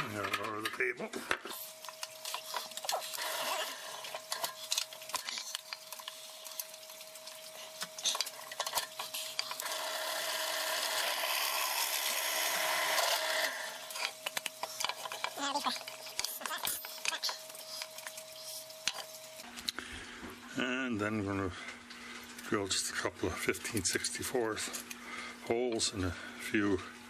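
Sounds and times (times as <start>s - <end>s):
faint hum: 0.0s - 27.0s.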